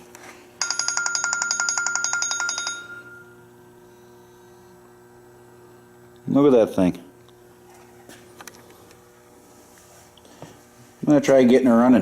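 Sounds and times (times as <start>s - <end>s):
faint steady hum: 0.0s - 12.0s
electronic ringtone trilling: 0.6s - 3.4s.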